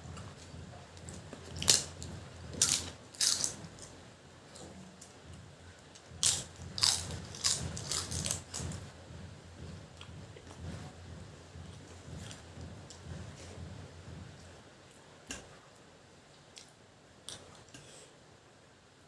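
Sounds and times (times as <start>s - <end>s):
crisp food crunching: 2.6s - 3.6s, 6.2s - 8.6s.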